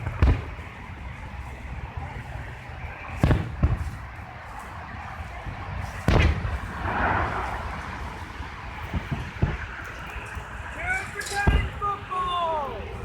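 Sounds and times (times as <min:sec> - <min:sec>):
fireworks booming: 0:00.0 - 0:12.2
rush of noise: 0:00.0 - 0:13.0.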